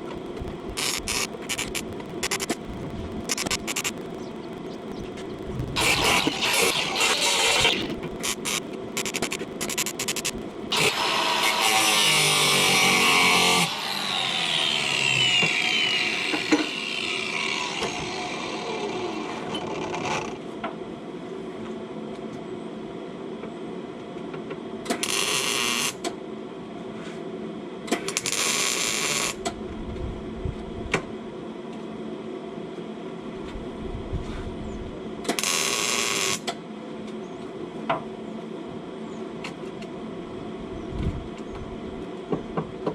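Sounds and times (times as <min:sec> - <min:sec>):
power tool spinning: 0:00.0 - 0:19.6.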